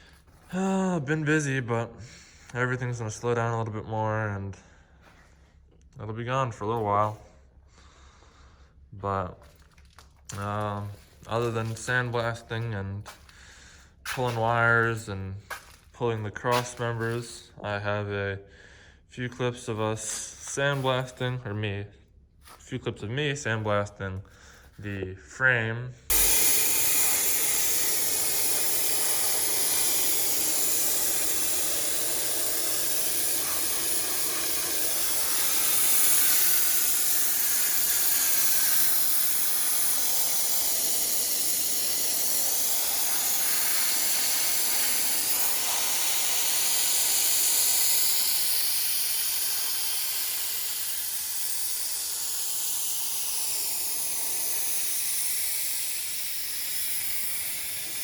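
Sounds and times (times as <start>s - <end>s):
sandblaster hissing: 26.1s - 58.0s.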